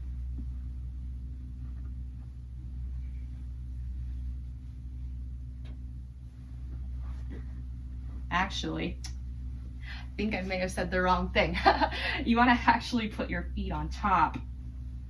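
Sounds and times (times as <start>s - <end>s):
steady low hum: 0.0s - 15.0s
faint soft clicks and rustles: 1.4s - 4.8s.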